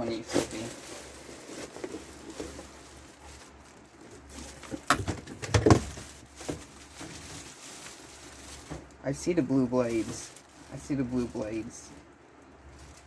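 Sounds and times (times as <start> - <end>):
packaging rustling and scraping: 0.0 - 13.0.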